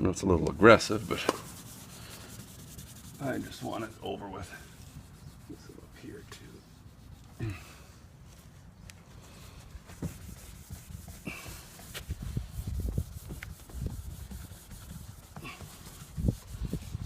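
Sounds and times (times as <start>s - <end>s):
hand rubbing car paint: 0.4s - 17.0s.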